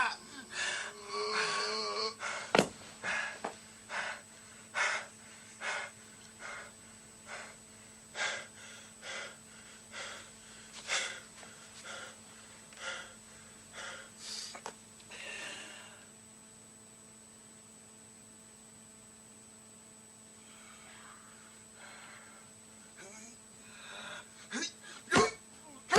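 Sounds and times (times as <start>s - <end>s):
heavy hoarse breathing: 0.0s - 16.1s, 20.4s - 25.1s.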